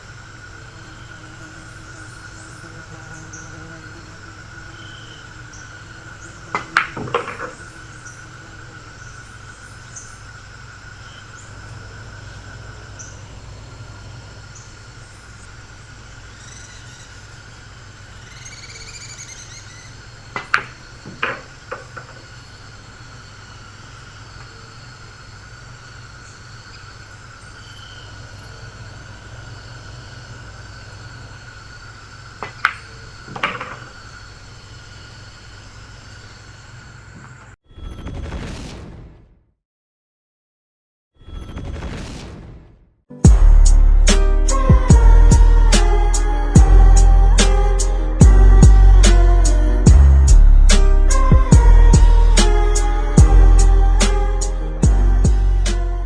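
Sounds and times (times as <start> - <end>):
faint hum: 0.0 - 37.6, 43.2 - 56.0
billiard balls clacking: 6.5 - 7.8, 20.2 - 22.6, 32.4 - 34.1
cue tip striking cue ball: 6.6 - 7.7, 20.4 - 22.2, 32.4 - 34.0.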